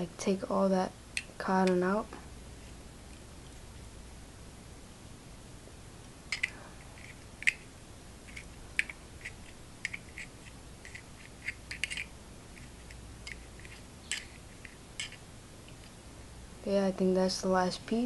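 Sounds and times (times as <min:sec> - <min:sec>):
staple remover clicking and scraping metal: 0:08.3 - 0:12.1.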